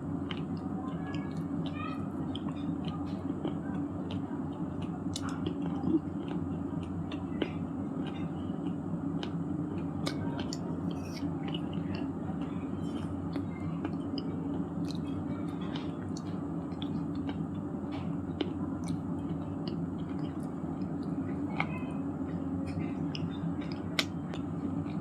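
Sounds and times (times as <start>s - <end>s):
low background hum: 0.0s - 25.0s.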